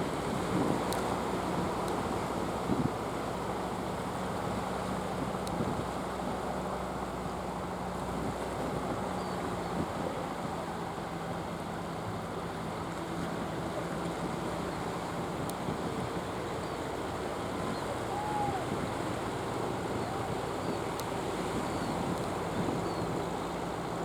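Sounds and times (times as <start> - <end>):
boat engine humming: 0.0 - 24.0
surf washing: 0.0 - 24.0
wind buffeting microphone: 13.5 - 24.0.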